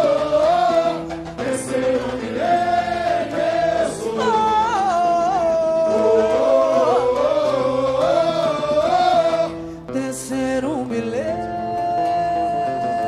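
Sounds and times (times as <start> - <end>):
band accompaniment: 0.0 - 10.0
singer and chorus with vibrato: 0.0 - 13.0.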